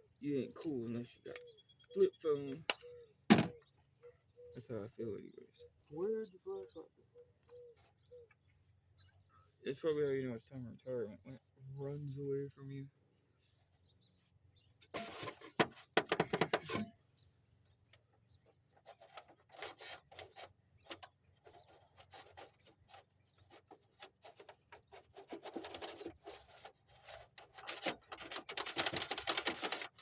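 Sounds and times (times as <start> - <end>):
small clicks and rustles: 17.9 - 30.0.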